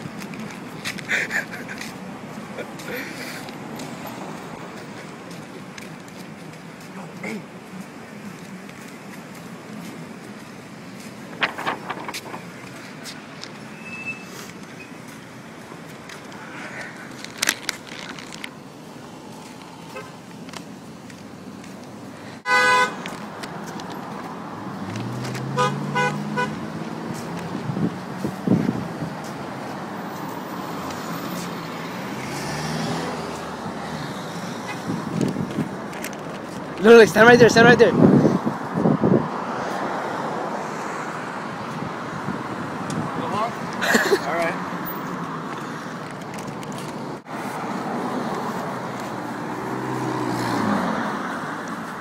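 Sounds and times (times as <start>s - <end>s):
road traffic going by: 0.0s - 52.0s
vehicle passing: 0.0s - 52.0s.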